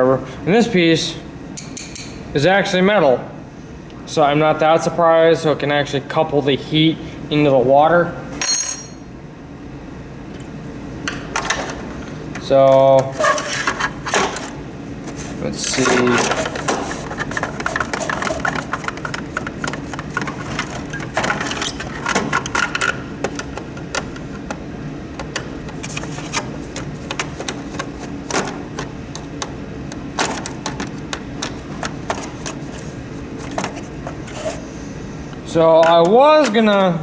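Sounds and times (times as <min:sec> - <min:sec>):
low background hum: 0:00.0 - 0:37.0
clicks and taps of plastic parts: 0:15.9 - 0:32.8.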